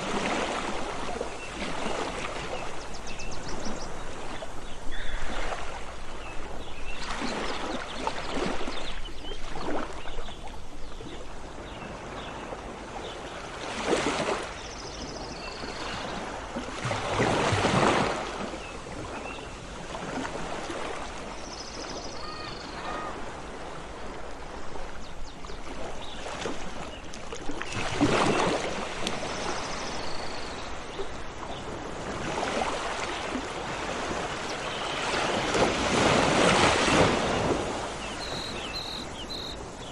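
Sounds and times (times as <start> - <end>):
sea waves washing in: 0.0 - 2.9, 31.7 - 39.9
high bird calls: 38.0 - 39.9.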